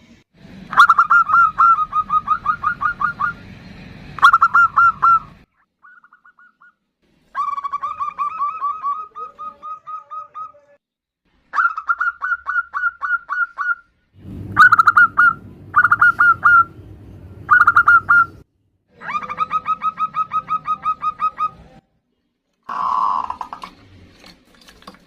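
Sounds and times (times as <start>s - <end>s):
doves cooing: 12.0s - 16.8s, 17.5s - 18.4s, 22.7s - 23.9s
low steady hum: 14.0s - 18.8s.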